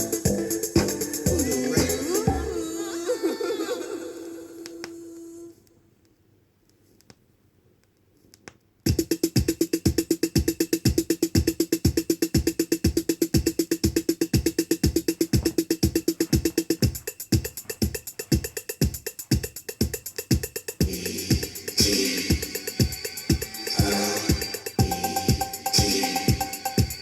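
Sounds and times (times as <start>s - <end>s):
drum machine kick: 0.0s - 2.6s, 8.9s - 27.0s
steady hi-hats: 0.0s - 2.8s, 8.8s - 27.0s.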